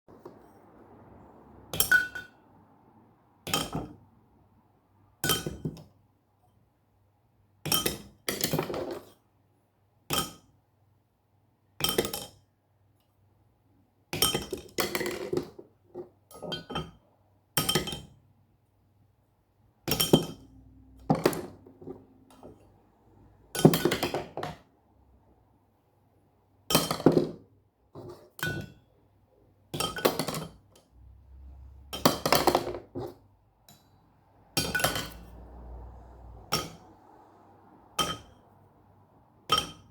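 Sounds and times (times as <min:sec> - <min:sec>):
hard objects struck and clinking: 0:01.8 - 0:02.4, 0:19.9 - 0:22.4, 0:34.6 - 0:35.7, 0:36.3 - 0:37.0, 0:38.0 - 0:38.5, 0:39.4 - 0:39.9.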